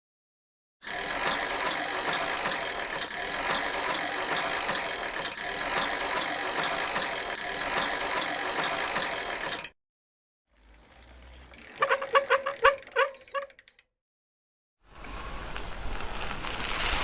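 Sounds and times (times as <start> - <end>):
chain and frame rattling: 11.8 - 13.6
bicycle tyres rolling hiss: 14.8 - 17.0.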